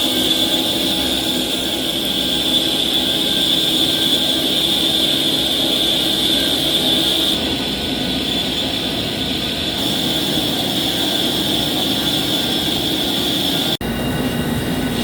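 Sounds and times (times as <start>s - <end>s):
high cutting whine: 0.0s - 15.0s
machine running hum: 0.0s - 15.0s.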